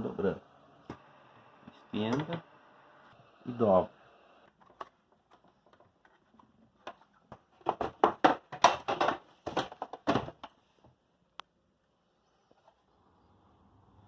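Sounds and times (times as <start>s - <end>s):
handling crackles and taps: 4.5s - 11.5s.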